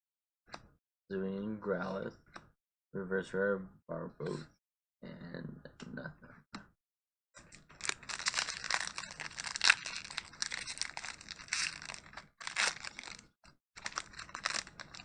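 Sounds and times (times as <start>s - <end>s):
foil wrapper tearing and crinkling: 7.5s - 15.0s.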